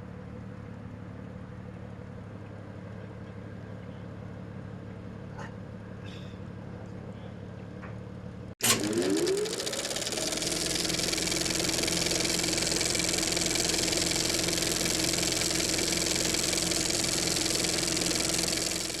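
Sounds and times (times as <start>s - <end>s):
off-road vehicle engine running: 7.2s - 19.0s.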